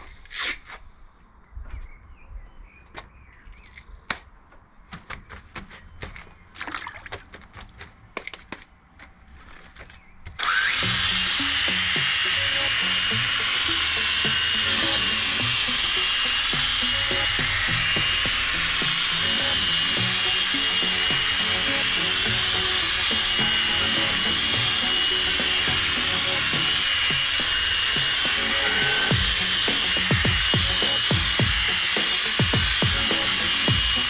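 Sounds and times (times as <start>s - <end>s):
power drill sanding plastic: 10.4s - 34.0s.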